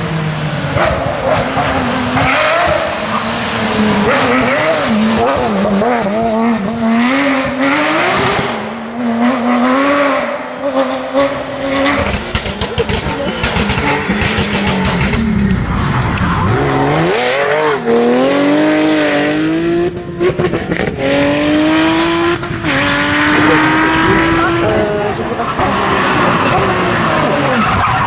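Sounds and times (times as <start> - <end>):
rally car engine revving: 0.0 - 28.0
exhaust crackling: 10.7 - 17.8, 22.3 - 28.0.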